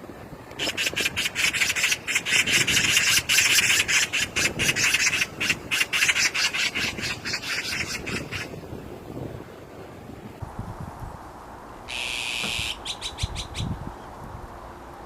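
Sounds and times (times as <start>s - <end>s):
magpie chattering: 0.6s - 8.5s, 11.9s - 13.7s.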